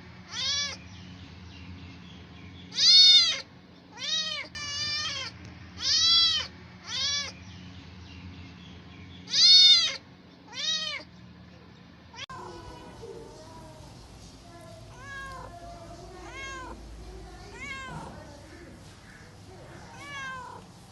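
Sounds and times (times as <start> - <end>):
cats meowing: 0.3 - 0.8, 2.7 - 7.4, 9.2 - 11.1, 14.6 - 19.0, 19.6 - 20.7
low murmur: 10.0 - 20.9.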